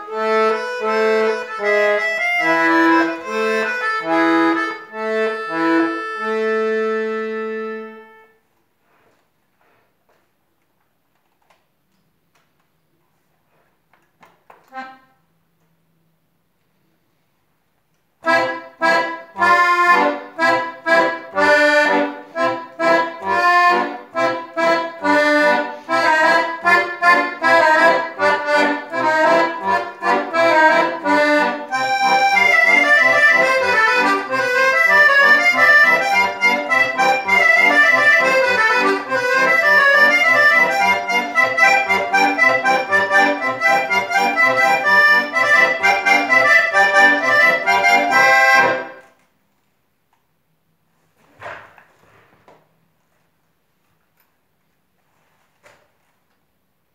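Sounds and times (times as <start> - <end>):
accordion playing dance music: 0.0 - 8.4, 14.7 - 15.2, 18.2 - 49.0.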